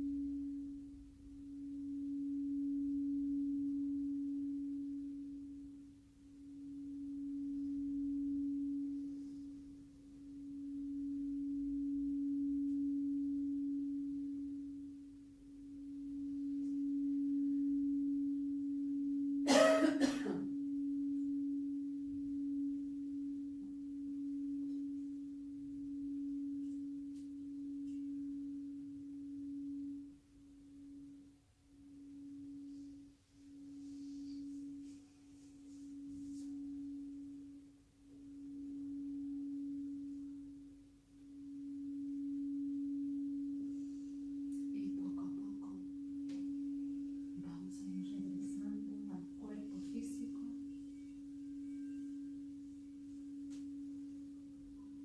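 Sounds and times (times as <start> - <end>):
crystal singing bowl note: 0.0 - 55.0
person coughing: 19.5 - 20.5.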